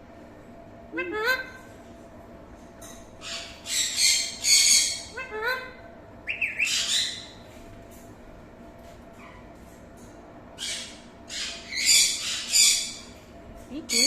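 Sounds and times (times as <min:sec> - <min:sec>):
parrot screeching: 0:03.2 - 0:05.7, 0:06.4 - 0:07.3, 0:10.6 - 0:13.0.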